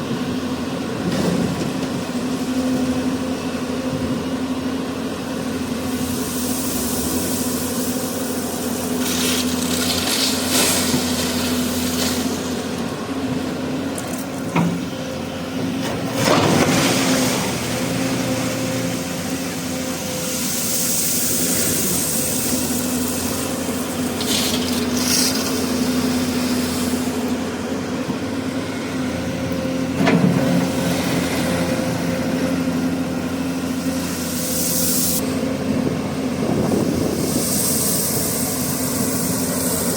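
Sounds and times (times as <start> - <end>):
excavator diesel engine running: 0.0 - 39.9
rushes of hiss: 33.9 - 35.2, 36.9 - 39.9.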